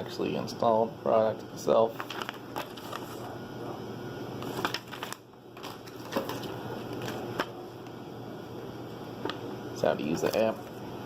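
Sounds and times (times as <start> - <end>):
paper packaging rustling: 1.9 - 3.4, 4.4 - 7.6.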